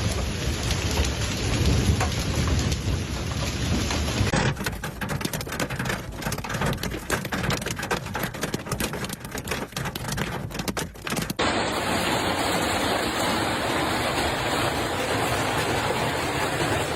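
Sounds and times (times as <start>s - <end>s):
heavy rain pattering: 0.0s - 16.9s
steady rushing noise: 11.4s - 16.9s.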